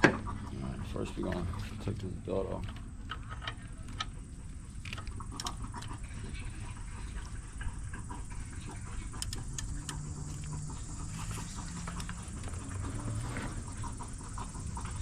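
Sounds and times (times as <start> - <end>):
faint ticks and scrapes: 0.4 - 15.0
hand tools clicking: 9.0 - 10.7.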